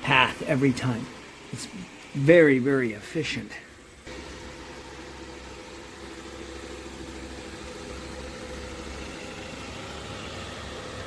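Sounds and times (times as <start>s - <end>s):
robot vacuum humming: 3.6s - 11.0s.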